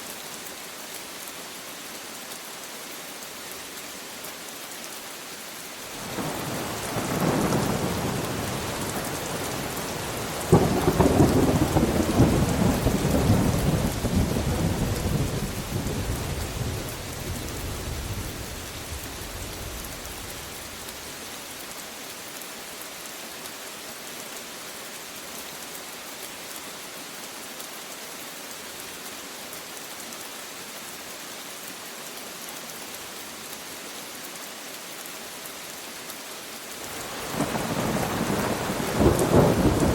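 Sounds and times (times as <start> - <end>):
steady rain: 0.0 - 39.9
thunder rumble and crack: 6.1 - 20.5, 37.0 - 39.9.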